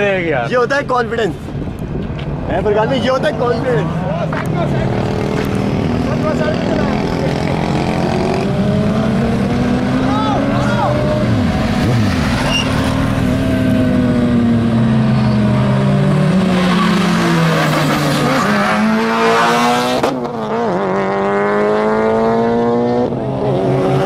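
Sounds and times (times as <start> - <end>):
motorcycle engine accelerating: 4.7 - 18.0, 18.8 - 24.0.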